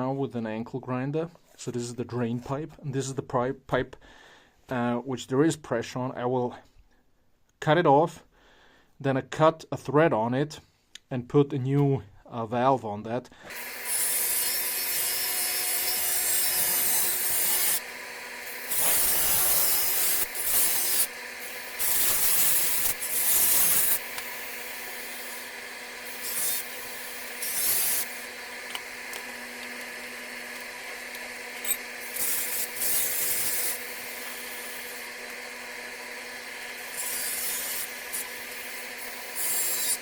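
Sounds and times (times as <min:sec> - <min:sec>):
angle grinder cutting steel pipe: 0:13.5 - 0:40.0.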